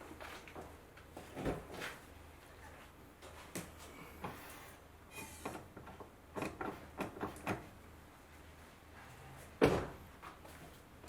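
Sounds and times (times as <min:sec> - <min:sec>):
loud thump: 0:09.6 - 0:10.0.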